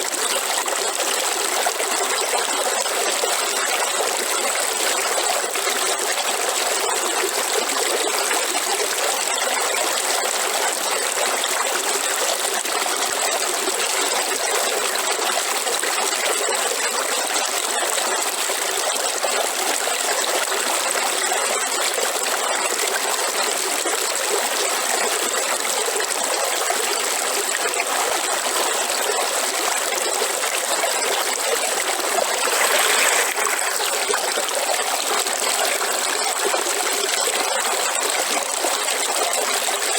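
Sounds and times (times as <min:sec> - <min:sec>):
river water flowing: 0:26.7 - 0:39.9.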